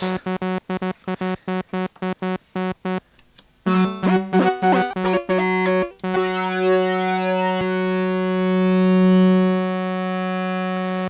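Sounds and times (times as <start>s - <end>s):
synthesizer with flanger effect: 3.7s - 9.2s.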